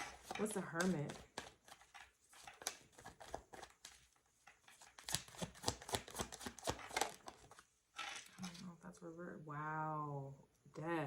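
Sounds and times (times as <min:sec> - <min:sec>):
cards flicking and tapping: 0:00.0 - 0:07.6.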